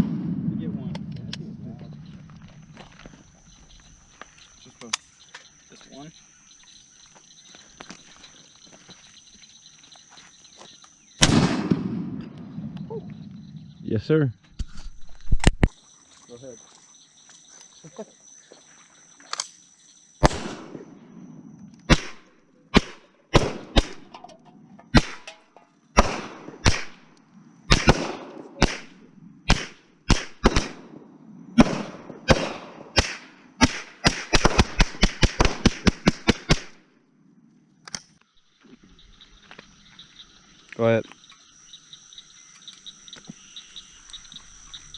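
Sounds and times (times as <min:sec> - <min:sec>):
faint insect buzz: 0:01.7 - 0:11.2, 0:12.5 - 0:22.8, 0:37.1 - 0:44.9
semi-automatic gunfire: 0:11.2 - 0:12.2, 0:20.2 - 0:20.9, 0:21.9 - 0:24.1, 0:24.9 - 0:25.4, 0:26.0 - 0:27.0, 0:27.7 - 0:30.9, 0:31.6 - 0:36.8.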